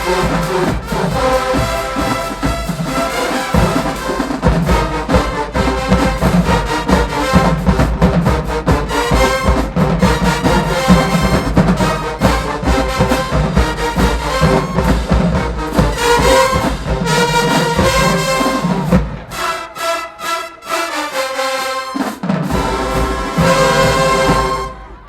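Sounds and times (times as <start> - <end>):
driving drum beat: 0.0 - 21.2, 21.8 - 25.0
marching band brass: 0.0 - 25.0.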